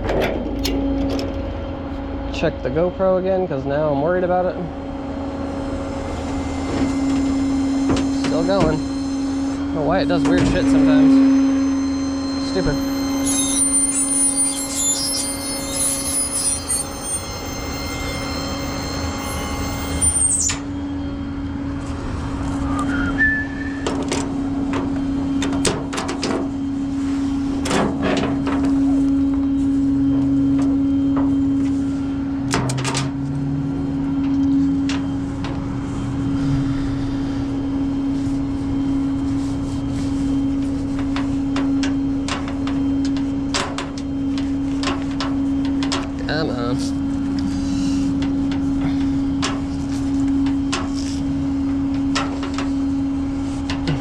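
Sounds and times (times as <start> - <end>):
metal clanks and knocks: 0.0 - 1.5
high-pitched whine: 0.0 - 54.0
tow truck engine droning: 0.0 - 54.0.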